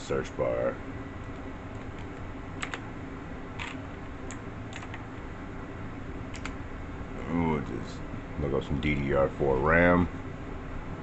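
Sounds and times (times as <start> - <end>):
steady low hum: 0.0 - 11.0
keyboard keystrokes: 1.2 - 2.8, 3.6 - 5.0, 6.3 - 6.6.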